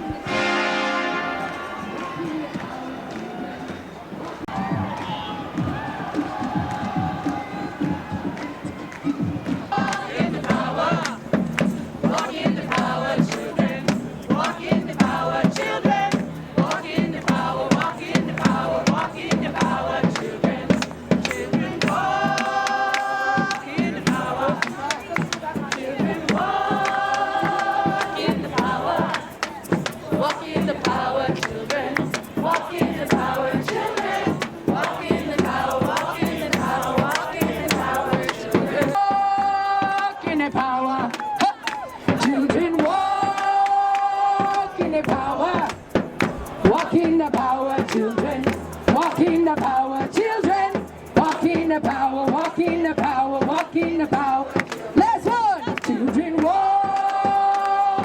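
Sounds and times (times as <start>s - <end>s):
crowd chanting: 0.0s - 58.0s
group of people singing: 0.0s - 58.0s
steady drumbeat: 4.4s - 43.7s.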